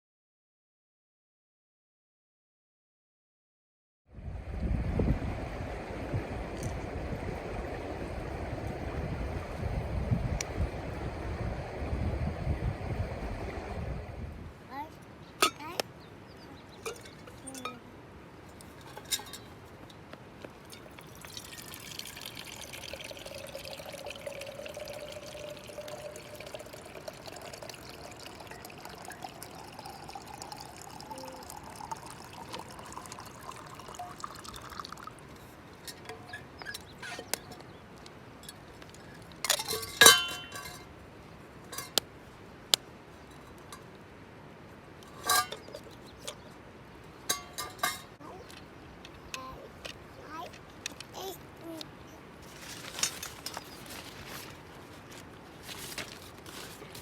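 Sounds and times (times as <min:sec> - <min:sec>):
liquid pouring into container: 0:21.0 - 0:35.3
glass or metal clinks: 0:39.5 - 0:40.9.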